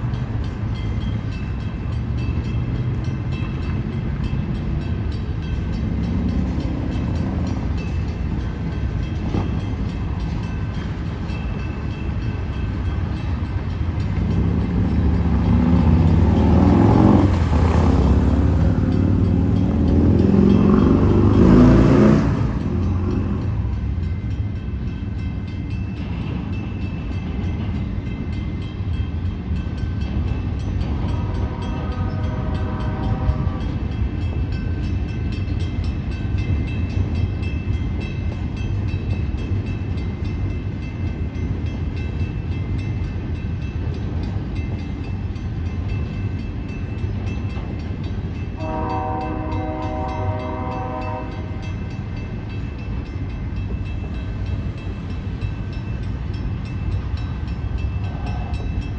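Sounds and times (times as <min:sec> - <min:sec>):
low rumble of railcars: 0:00.0 - 0:58.9
train air horn blasts: 0:31.1 - 0:33.8, 0:48.6 - 0:51.6.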